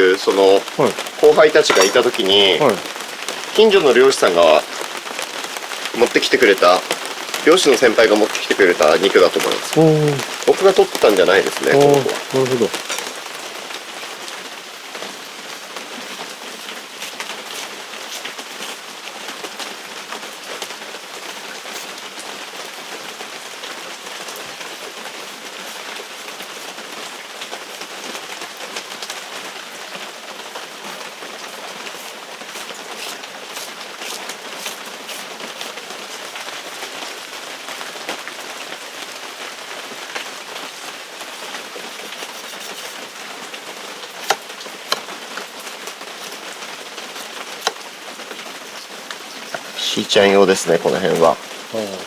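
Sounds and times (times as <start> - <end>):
steady hiss: 0.0 - 13.4.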